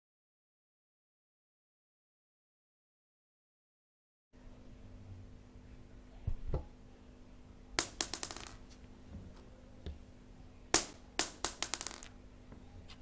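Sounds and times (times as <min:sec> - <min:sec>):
beads scattering on hard floor: 0:07.8 - 0:08.8, 0:10.8 - 0:12.2.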